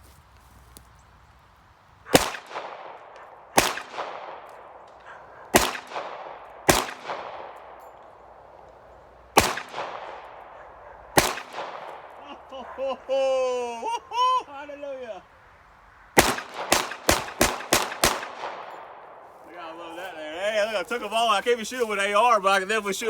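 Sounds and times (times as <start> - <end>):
pistol shots with echo: 2.1 - 12.5, 16.2 - 19.2.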